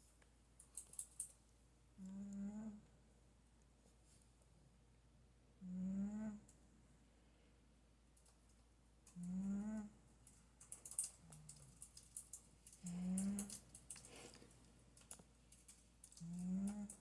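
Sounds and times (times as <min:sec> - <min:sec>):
cat snoring: 0:02.1 - 0:02.8, 0:05.6 - 0:06.4, 0:09.2 - 0:09.9
faint clicks: 0:08.2 - 0:17.0.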